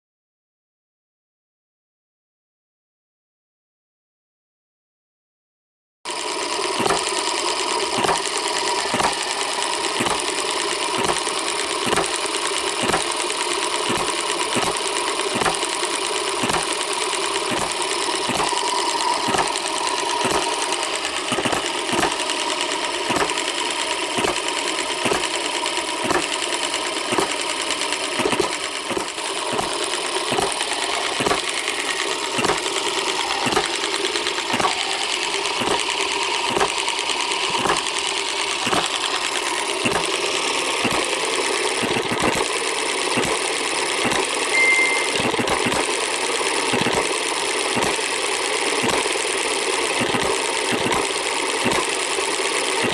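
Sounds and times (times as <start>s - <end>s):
engine mechanical clatter: 6.1s - 52.9s
sharp engine cylinder pops: 23.1s - 23.4s, 36.5s - 36.8s, 39.8s - 40.1s.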